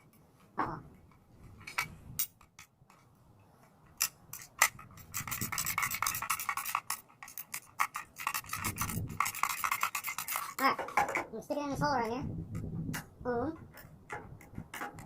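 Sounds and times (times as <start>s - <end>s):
ratcheting jack clicking: 4.0s - 11.2s.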